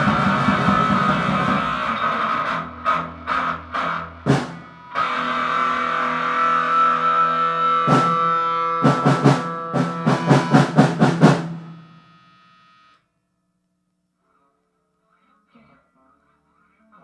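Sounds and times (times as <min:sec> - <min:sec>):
drum kit crashing strokes: 0:00.0 - 0:12.3
guitar chord ringing: 0:00.0 - 0:13.0.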